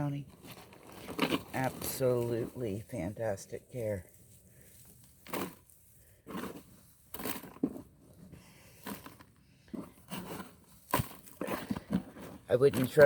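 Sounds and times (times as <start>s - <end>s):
digging through soil: 0.0s - 13.0s.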